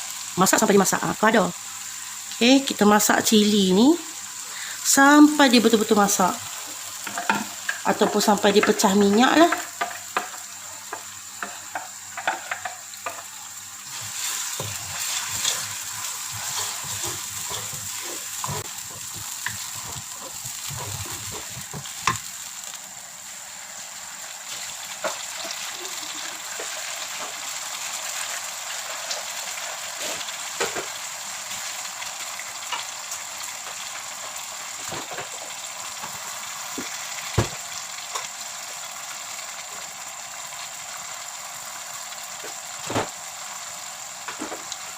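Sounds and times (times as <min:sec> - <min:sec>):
chilli paste sizzling in oil: 0:00.0 - 0:44.9
spatula scraping a pan: 0:13.8 - 0:22.2.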